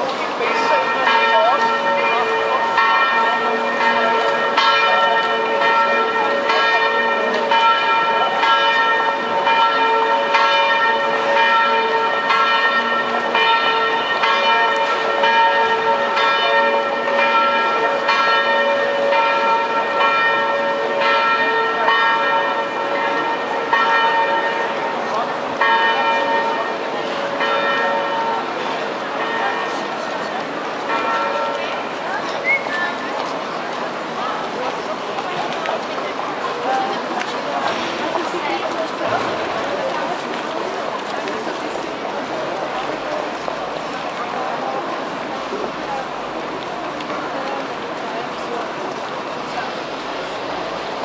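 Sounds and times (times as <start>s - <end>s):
bells ringing in a peal: 0.0s - 46.2s
murmur of voices: 0.0s - 51.0s.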